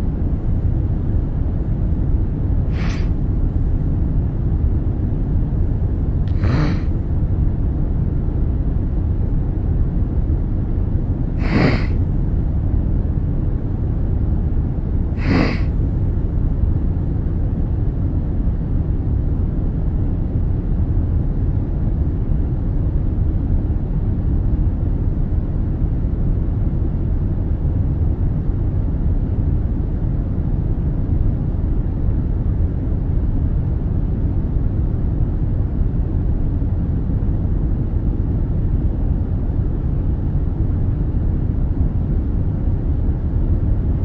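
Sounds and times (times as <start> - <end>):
airliner cabin drone: 0.0 - 44.0
man sniffling: 2.7 - 3.2, 6.3 - 7.0, 11.4 - 12.0, 15.2 - 15.8.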